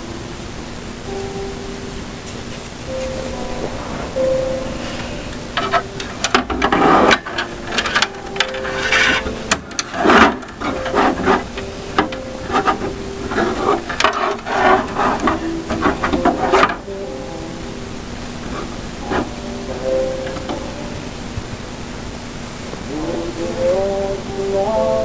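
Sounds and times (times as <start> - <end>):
computer parts scraping: 5.6 - 16.8.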